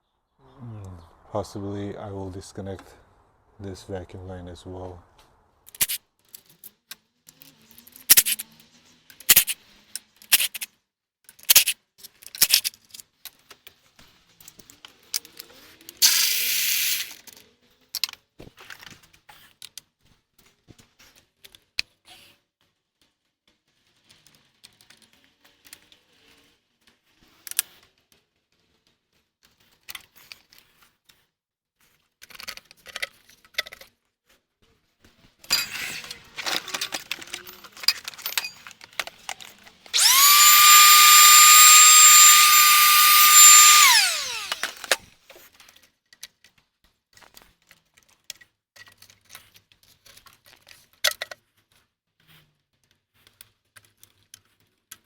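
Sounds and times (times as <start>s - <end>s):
hand tools and metal clatter: 5.7s - 6.0s, 7.8s - 8.4s, 9.3s - 9.6s, 10.3s - 10.7s, 35.4s - 45.0s
cordless power tool whining: 39.9s - 45.1s.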